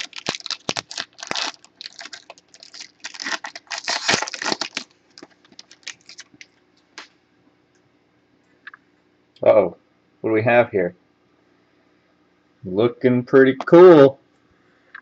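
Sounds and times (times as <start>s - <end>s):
packaging rustling and tearing: 0.0s - 6.6s.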